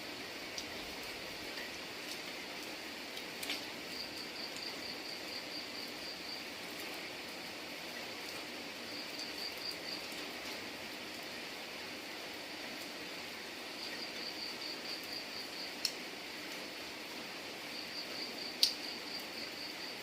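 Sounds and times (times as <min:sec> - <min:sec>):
steady rain hiss: 0:00.0 - 0:20.0
sharp drip clicks: 0:15.8 - 0:16.0, 0:18.6 - 0:18.9.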